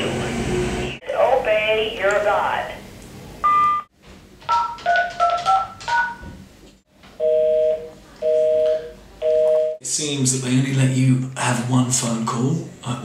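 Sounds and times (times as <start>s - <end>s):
telephone busy signal: 7.2s - 9.8s.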